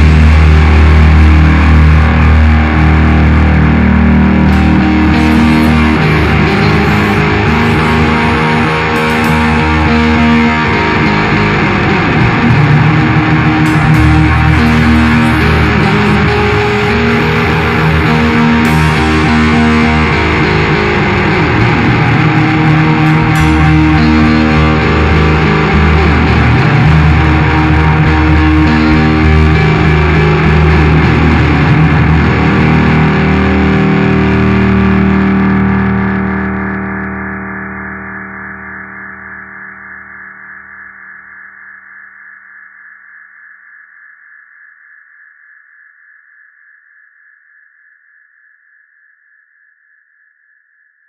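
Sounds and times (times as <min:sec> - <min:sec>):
rock band music: 0:00.0 - 0:37.4
low bass notes: 0:00.0 - 0:40.6
distorted electric guitar: 0:00.0 - 0:46.0.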